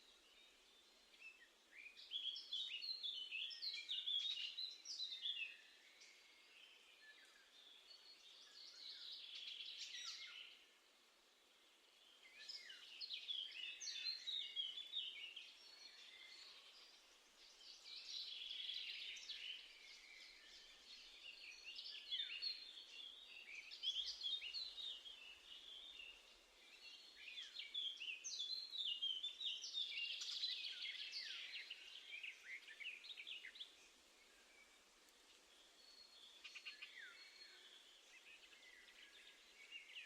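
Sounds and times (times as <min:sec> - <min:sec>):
songbirds chirping and trilling: 0:00.0 - 0:40.0.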